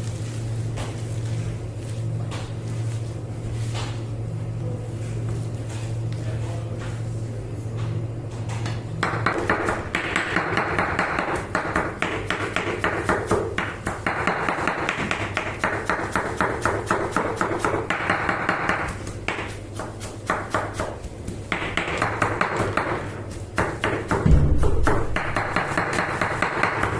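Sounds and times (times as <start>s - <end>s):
steady low hum: 0.0s - 26.9s
knife chopping on cutting board: 9.0s - 26.9s.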